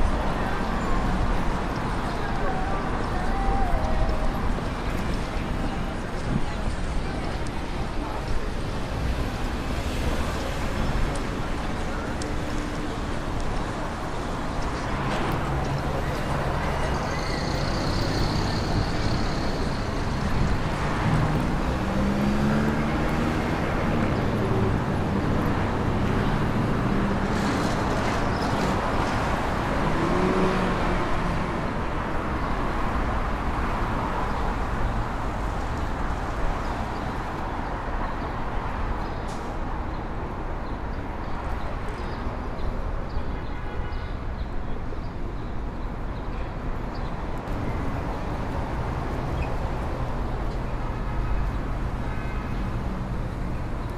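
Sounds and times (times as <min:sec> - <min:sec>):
hum of passing traffic: 0:00.0 - 0:43.1.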